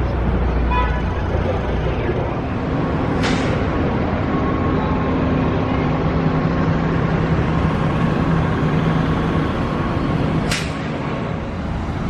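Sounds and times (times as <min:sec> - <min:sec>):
heavy engine running: 0:00.0 - 0:12.0
street traffic noise: 0:00.0 - 0:12.0
sharp snap: 0:10.4 - 0:10.9.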